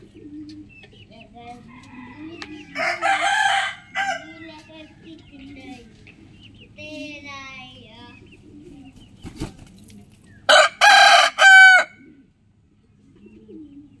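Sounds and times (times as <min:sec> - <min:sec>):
chicken calls: 0:00.0 - 0:04.7, 0:08.2 - 0:14.0
rooster crowing: 0:01.8 - 0:04.4, 0:10.5 - 0:12.0.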